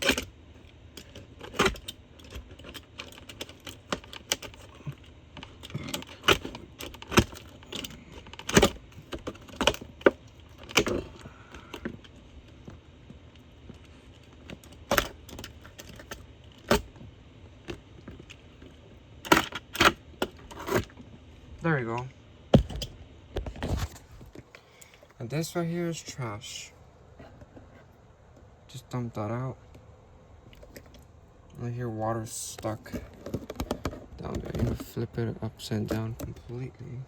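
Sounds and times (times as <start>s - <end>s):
handling rattles: 0.0s - 17.0s, 22.6s - 24.5s, 32.4s - 36.7s.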